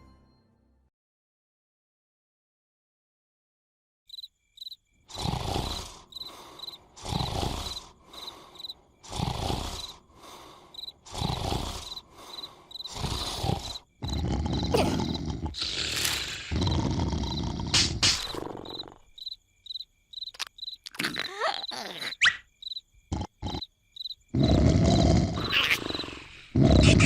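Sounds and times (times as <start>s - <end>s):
crickets chirping: 4.1s - 27.0s
cartoon snoring: 5.1s - 19.2s, 23.1s - 23.7s, 24.3s - 27.0s.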